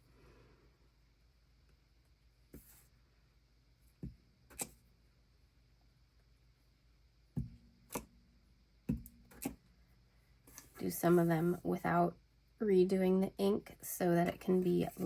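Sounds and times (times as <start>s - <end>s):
stamp dull thud: 7.4s - 8.0s, 8.9s - 9.6s.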